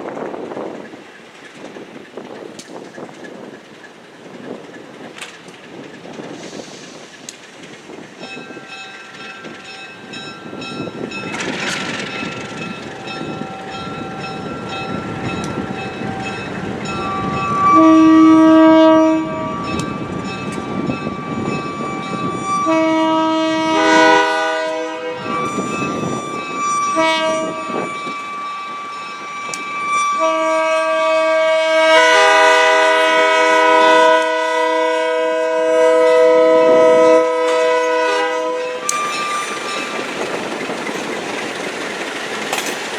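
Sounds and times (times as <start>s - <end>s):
locomotive air horn blasts: 17.0s - 19.8s, 21.8s - 39.8s
diesel locomotive engine running: 36.5s - 42.9s.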